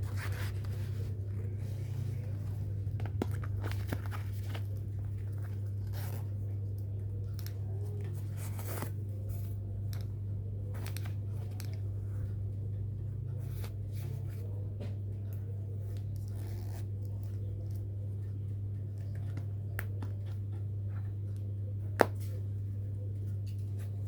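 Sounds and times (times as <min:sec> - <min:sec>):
wallet packaging rustling: 0:00.0 - 0:06.6, 0:07.4 - 0:09.6
steady low hum: 0:00.0 - 0:24.0.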